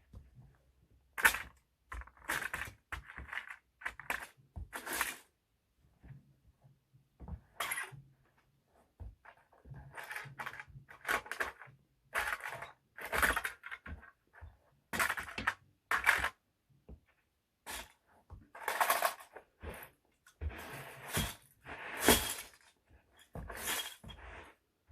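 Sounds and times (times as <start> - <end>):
toy trucks cracking and crunching: 1.2 - 5.3.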